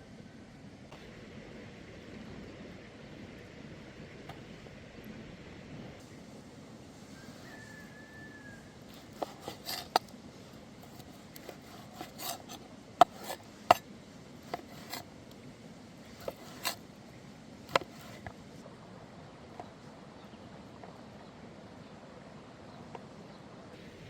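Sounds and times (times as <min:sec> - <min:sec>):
utensils clicking and scraping: 0:08.8 - 0:15.4, 0:16.0 - 0:16.8, 0:17.6 - 0:18.6.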